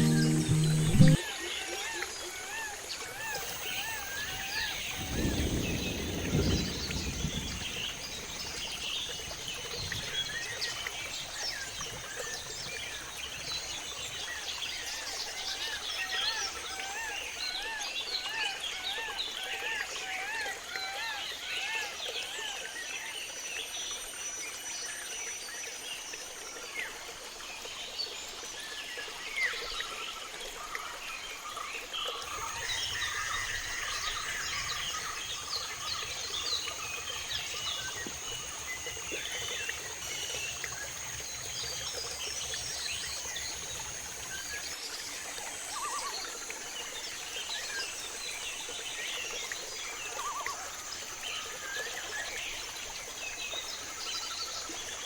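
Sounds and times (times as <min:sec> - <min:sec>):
birds and frogs chirping: 0:00.0 - 0:22.6, 0:28.9 - 0:55.0
high-pitched insect drone: 0:03.2 - 0:07.3.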